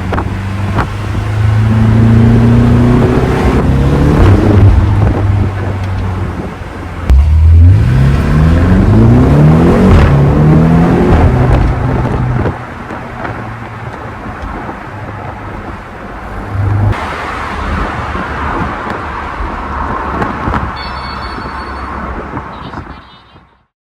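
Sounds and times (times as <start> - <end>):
car exhaust running: 0.0 - 14.7.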